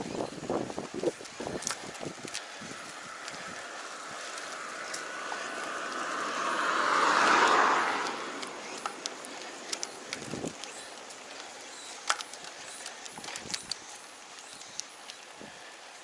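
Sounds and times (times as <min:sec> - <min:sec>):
small ticks: 0:00.5 - 0:16.0
car passing by: 0:02.8 - 0:11.1.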